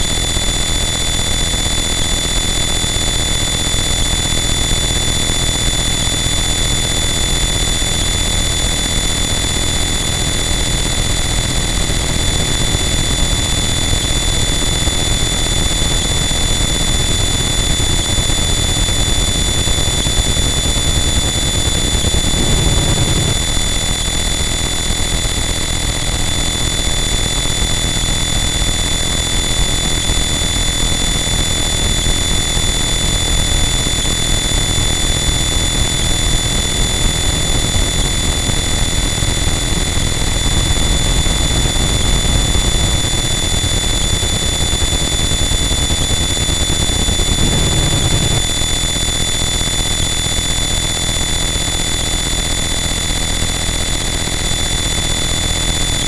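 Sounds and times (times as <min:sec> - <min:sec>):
dense static noise: 0:20.4 - 0:24.1, 0:45.8 - 0:48.8.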